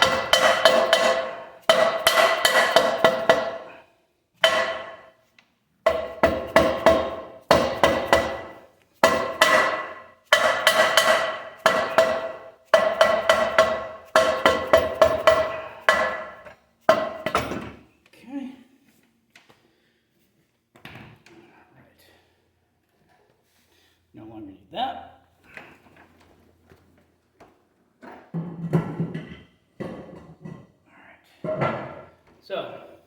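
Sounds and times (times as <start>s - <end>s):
hammer striking ringing metal: 0.0s - 3.7s, 4.4s - 5.1s, 5.9s - 17.4s.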